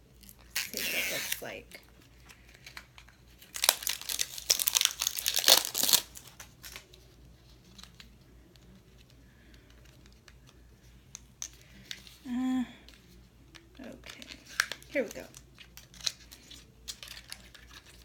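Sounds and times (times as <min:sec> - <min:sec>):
packaging tearing and crinkling: 0:00.2 - 0:01.6, 0:03.4 - 0:07.0, 0:14.1 - 0:18.0.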